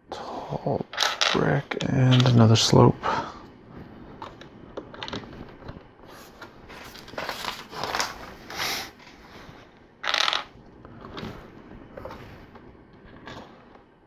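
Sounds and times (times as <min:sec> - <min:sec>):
plastic bricks clicking: 0:00.9 - 0:01.5, 0:10.0 - 0:11.3
plastic bricks clattering: 0:00.9 - 0:02.4, 0:06.8 - 0:08.4, 0:10.0 - 0:11.3.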